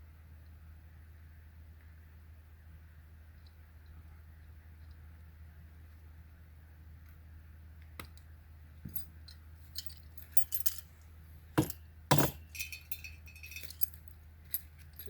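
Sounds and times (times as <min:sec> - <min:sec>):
metal trap and chain clinking: 0:08.9 - 0:11.0, 0:11.6 - 0:15.0.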